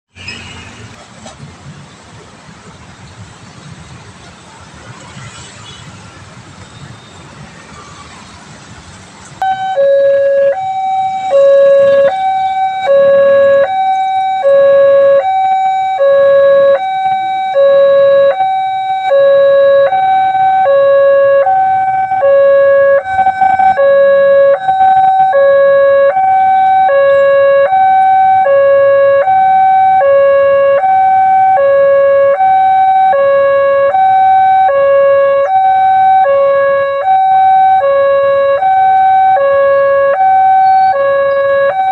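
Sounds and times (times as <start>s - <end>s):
two-tone crossing alarm: 9.4s - 41.9s.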